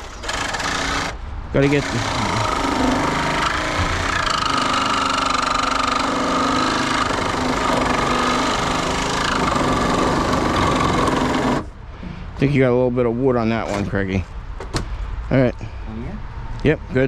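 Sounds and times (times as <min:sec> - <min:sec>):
power saw cutting through nails: 0:00.0 - 0:11.7.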